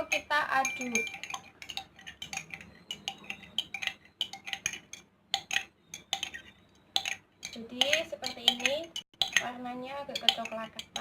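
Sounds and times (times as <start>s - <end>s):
spoon clinking against glass: 0.0s - 11.0s
faint glass ringing: 0.6s - 4.5s.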